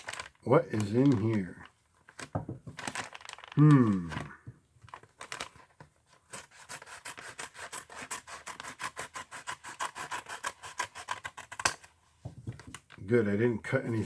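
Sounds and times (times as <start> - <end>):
blade sawing open a package: 6.3 - 11.8.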